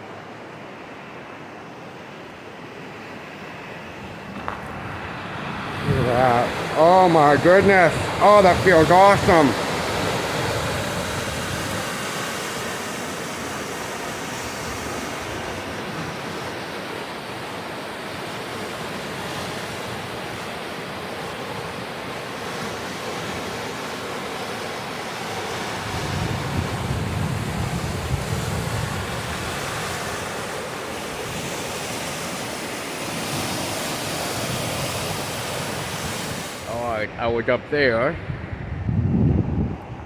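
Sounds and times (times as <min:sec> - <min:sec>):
high wind rushing: 0:03.5 - 0:12.5, 0:25.7 - 0:32.6, 0:35.1 - 0:40.0
wind buffeting microphone: 0:04.0 - 0:12.1, 0:25.6 - 0:30.5, 0:34.6 - 0:40.0.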